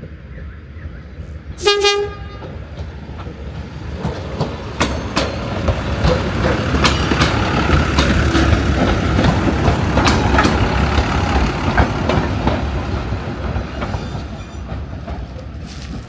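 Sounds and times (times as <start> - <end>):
rail motor running: 0.1 - 16.0
train horn blast: 1.6 - 2.6
wheels clicking over rail joints: 2.4 - 16.0.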